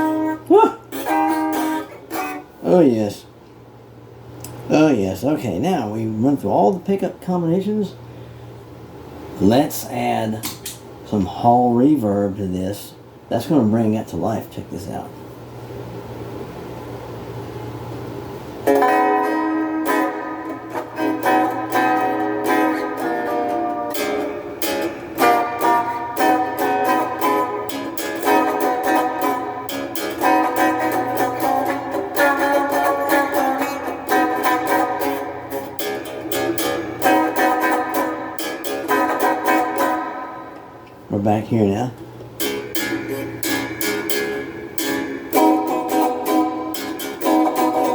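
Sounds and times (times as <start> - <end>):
electric guitar strummed with reverb: 0.0 - 2.8, 18.6 - 40.9, 42.3 - 47.9
low steady amp hum: 0.0 - 47.9.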